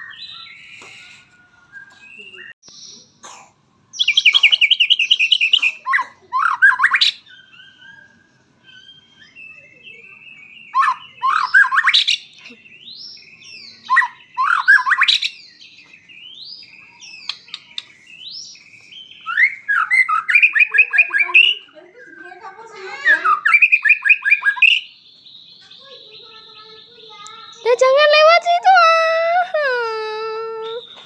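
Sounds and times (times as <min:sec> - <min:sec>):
songbird singing trills and whistles: 0:00.0 - 0:03.1, 0:03.9 - 0:31.0.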